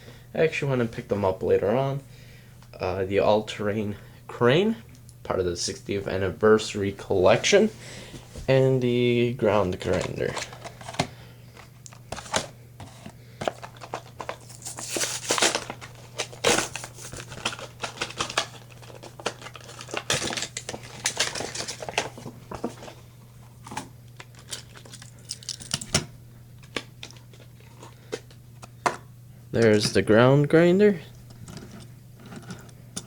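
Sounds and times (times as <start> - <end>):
plastic packaging crinkling: 9.7 - 25.9, 26.6 - 28.8.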